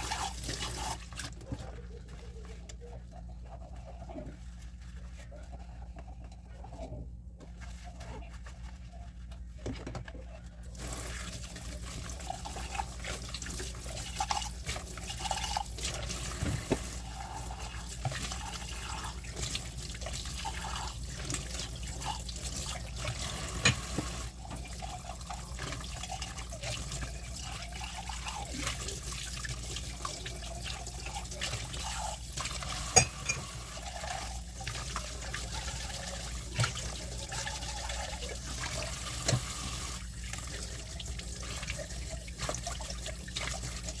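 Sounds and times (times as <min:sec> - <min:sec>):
dishes clinking: 0:32.9 - 0:33.6.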